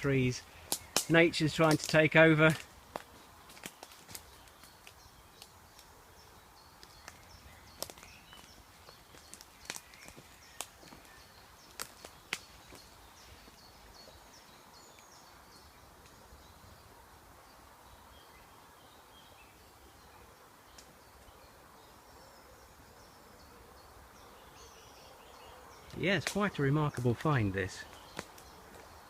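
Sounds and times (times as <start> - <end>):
twigs snapping: 0.6 - 5.9, 6.8 - 13.6, 25.9 - 27.2, 27.8 - 29.0
footsteps through undergrowth: 0.7 - 5.9, 6.8 - 15.2
small bird chirping: 3.2 - 16.9.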